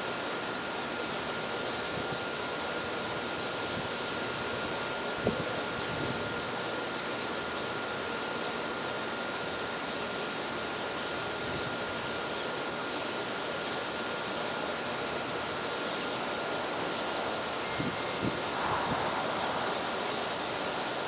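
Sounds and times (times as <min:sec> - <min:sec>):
steady rushing noise: 0:16.2 - 0:21.0.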